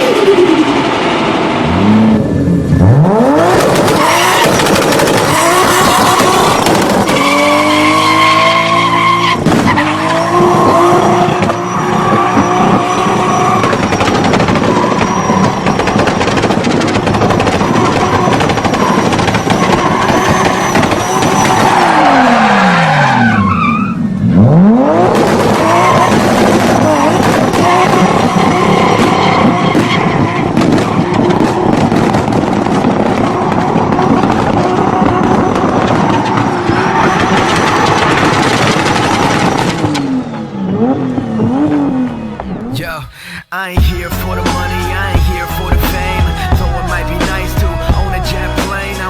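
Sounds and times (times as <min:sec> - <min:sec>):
car engine revving hard: 0:00.0 - 0:23.4, 0:24.2 - 0:31.2.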